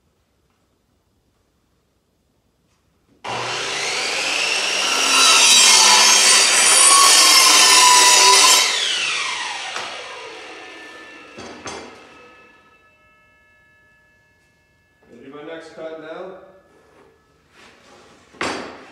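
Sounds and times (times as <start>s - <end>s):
power saw cutting wood: 3.3s - 12.8s.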